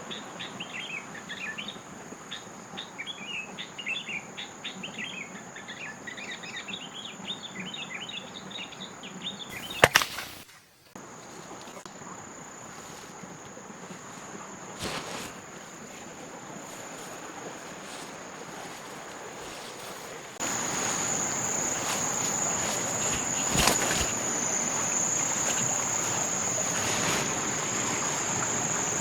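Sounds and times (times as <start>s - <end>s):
small birds chirping: 2.4s - 10.4s, 11.0s - 29.0s
high insect drone: 9.5s - 29.0s.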